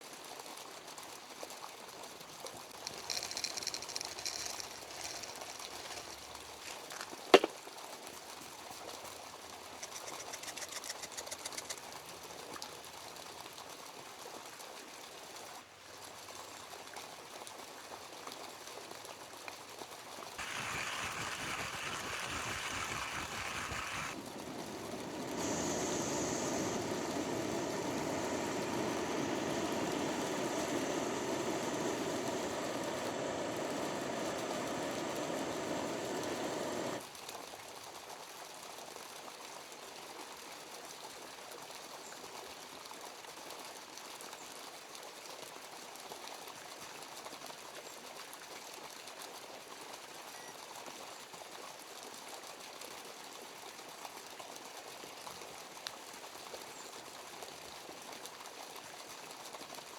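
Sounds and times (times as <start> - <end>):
stream water rushing: 20.4 - 37.0.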